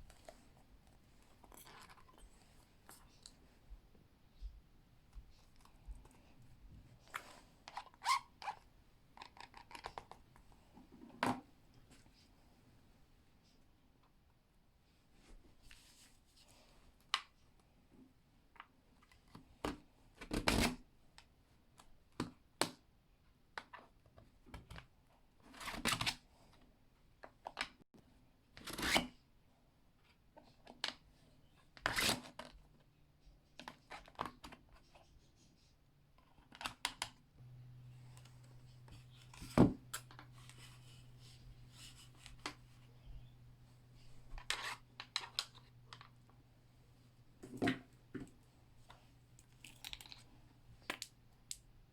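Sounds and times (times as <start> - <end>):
low steady hum: 37.4 - 51.9
small objects clicking and rustling: 48.9 - 51.7.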